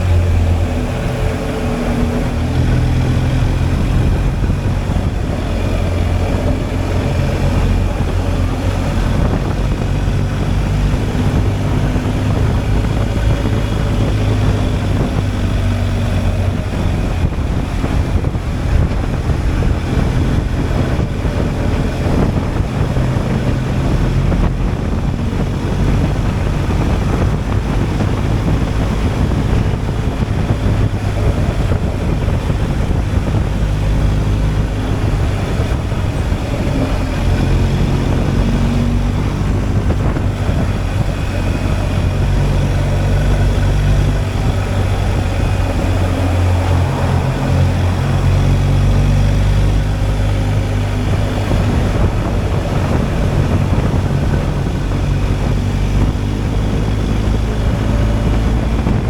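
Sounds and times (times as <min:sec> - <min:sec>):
motorcycle engine running: 0:00.0 - 0:59.0
wind noise: 0:00.0 - 0:59.0.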